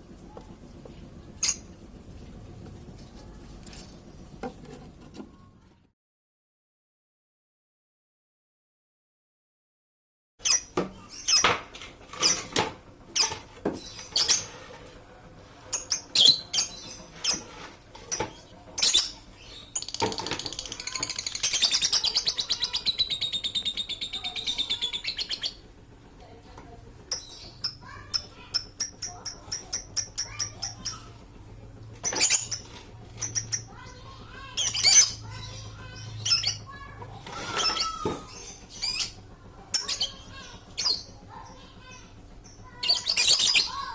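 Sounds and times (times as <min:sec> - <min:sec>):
birds chattering fast: 0:01.1 - 0:01.9, 0:10.4 - 0:43.9.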